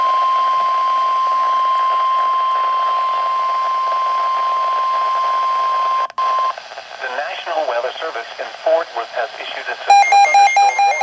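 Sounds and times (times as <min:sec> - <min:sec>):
faint radio hiss: 0:06.2 - 0:10.3
steady alarm tone: 0:09.9 - 0:11.0.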